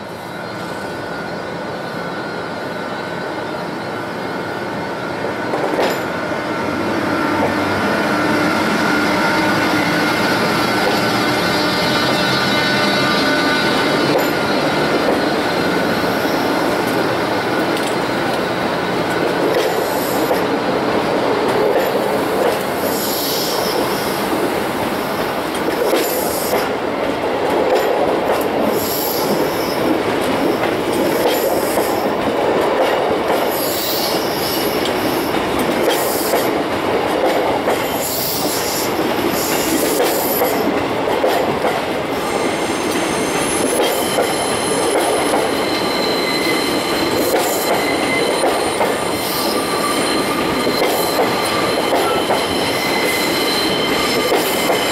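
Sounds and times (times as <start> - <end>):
train rumbling on rails: 0.0 - 54.9
high-pitched wheel squeal: 42.2 - 54.9.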